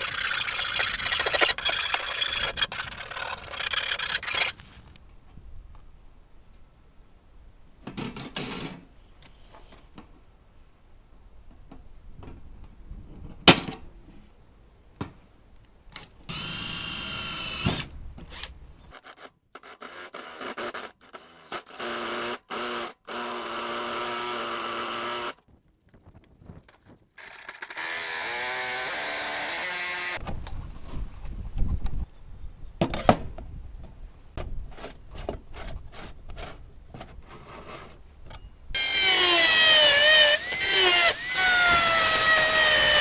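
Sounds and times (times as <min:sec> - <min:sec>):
electric power tool whining: 0:00.0 - 0:05.0, 0:19.0 - 0:25.4, 0:27.2 - 0:30.2, 0:38.8 - 0:43.0.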